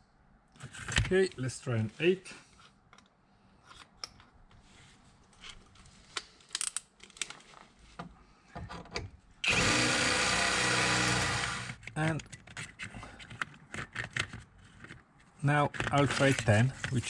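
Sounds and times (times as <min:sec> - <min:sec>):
electric drill boring sheet metal: 0:09.4 - 0:11.8
handling clicks and knocks: 0:11.8 - 0:17.0.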